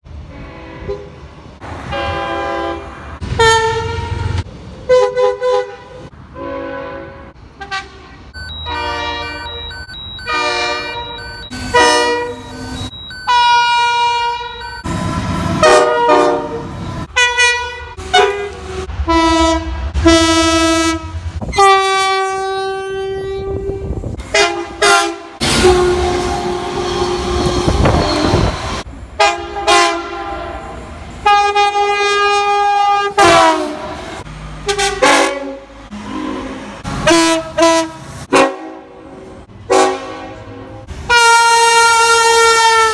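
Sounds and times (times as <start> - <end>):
passing trains rumbling: 0.0 - 42.9
locomotive air horns: 0.3 - 9.6, 10.3 - 42.9.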